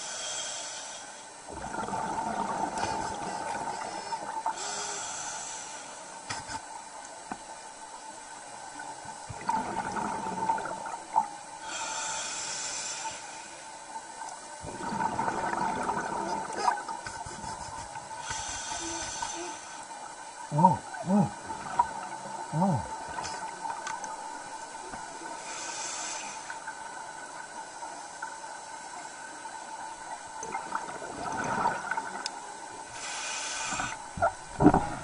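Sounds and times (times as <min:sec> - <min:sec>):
regulator inhale hiss: 0:00.0 - 0:01.5, 0:02.8 - 0:06.7, 0:11.6 - 0:13.8, 0:17.5 - 0:20.1, 0:25.2 - 0:26.8, 0:32.9 - 0:34.2
exhaled bubbles gurgling: 0:01.5 - 0:04.8, 0:09.2 - 0:11.5, 0:14.6 - 0:19.4, 0:20.4 - 0:25.6, 0:30.0 - 0:32.9, 0:33.7 - 0:35.0.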